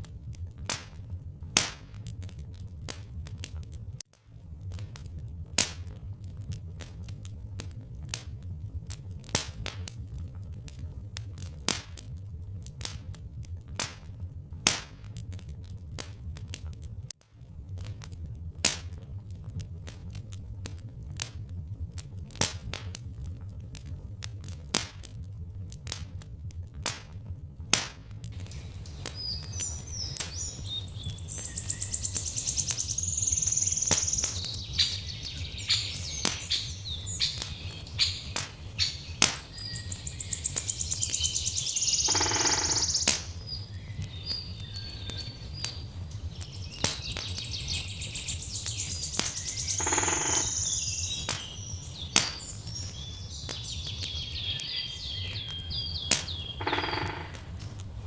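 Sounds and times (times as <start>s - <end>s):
wood fire crackling and popping: 0.0s - 58.0s
steady low rumble: 28.3s - 42.2s, 50.5s - 58.0s
songbirds chirping and trilling: 28.4s - 58.0s.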